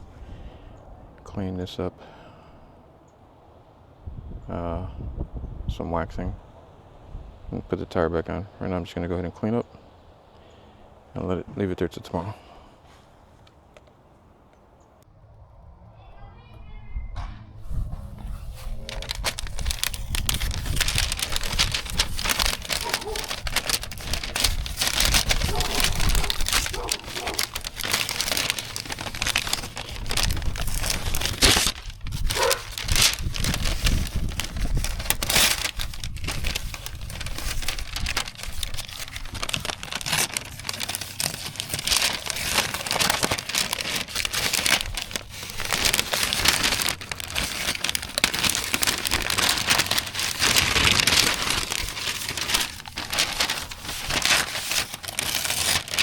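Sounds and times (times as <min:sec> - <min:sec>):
material crinkling and crumpling: 0:17.8 - 0:56.0.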